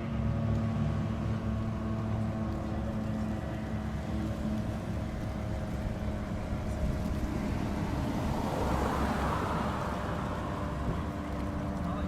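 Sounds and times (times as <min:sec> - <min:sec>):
car driving past: 0:06.9 - 0:11.8.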